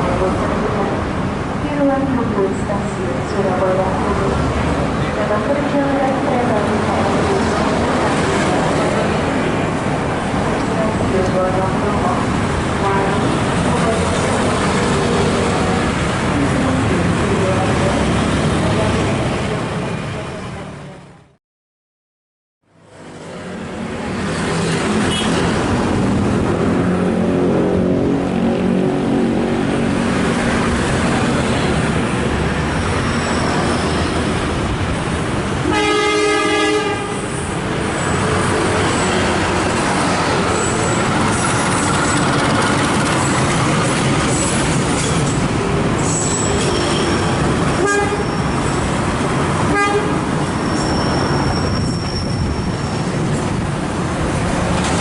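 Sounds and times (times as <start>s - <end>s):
diesel train running on rails: 0.0s - 21.4s, 22.7s - 55.0s
train horn blast: 35.6s - 37.4s, 47.8s - 48.3s, 49.7s - 50.2s.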